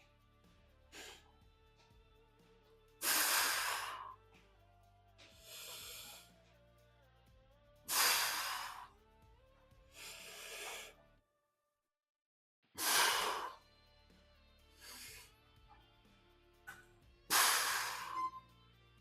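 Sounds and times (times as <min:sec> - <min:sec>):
faint background music: 0:00.0 - 0:11.3, 0:12.7 - 0:19.0
man breathing heavily: 0:00.9 - 0:01.4, 0:03.0 - 0:04.5, 0:05.2 - 0:06.6, 0:07.8 - 0:09.0, 0:09.8 - 0:11.0, 0:12.8 - 0:13.6, 0:14.7 - 0:15.4, 0:17.3 - 0:18.3.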